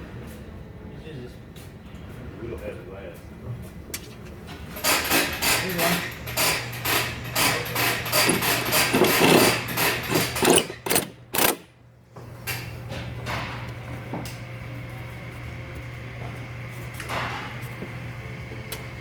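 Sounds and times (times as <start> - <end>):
metallic tool clicks and clanks: 7.4 - 11.6.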